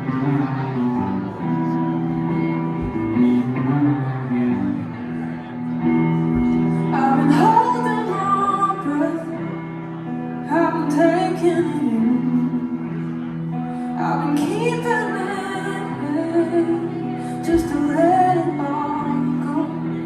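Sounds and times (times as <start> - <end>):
held instrumental accompaniment: 0.0 - 20.0
woman singing: 6.5 - 20.0.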